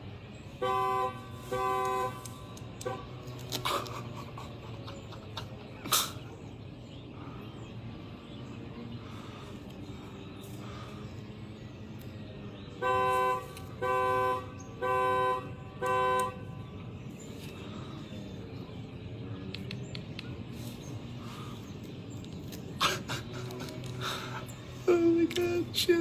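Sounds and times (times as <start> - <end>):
car horn honking: 0.6 - 3.2, 12.8 - 16.6.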